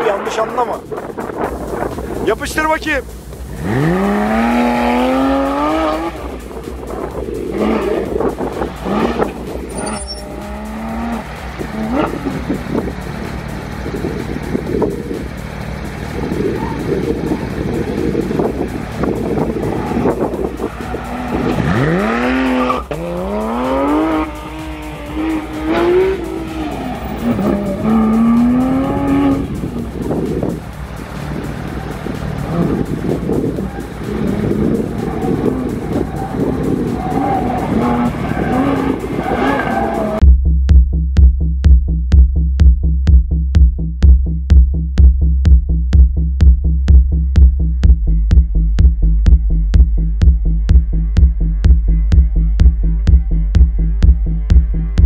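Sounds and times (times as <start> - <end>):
sports car engine accelerating: 0.0 - 40.2.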